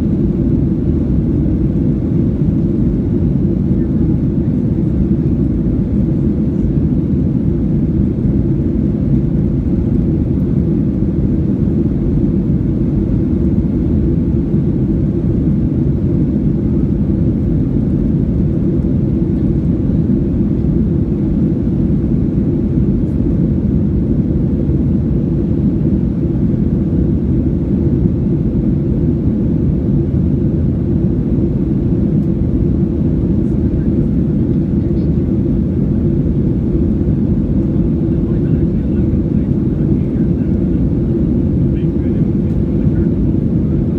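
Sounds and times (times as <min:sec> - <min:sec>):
airplane cabin engine rumble: 0:00.0 - 0:43.9.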